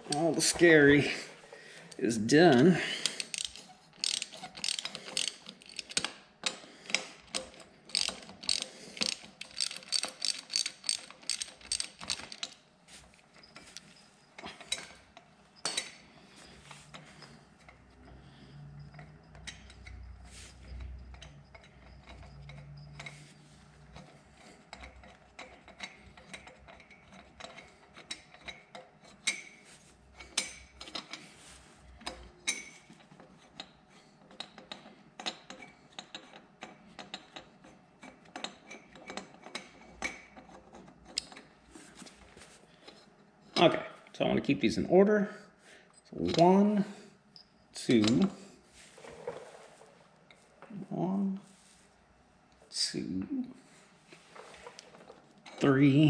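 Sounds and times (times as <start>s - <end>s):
metal tool handling: 0.0s - 6.6s
ratchet wrench clicking: 2.5s - 12.6s.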